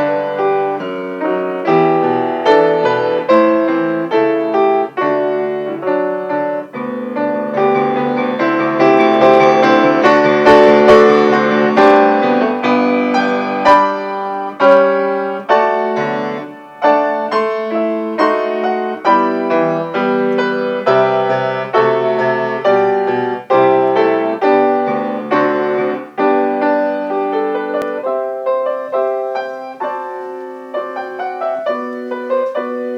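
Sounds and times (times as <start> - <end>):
solo piano playing: 0.0 - 32.9.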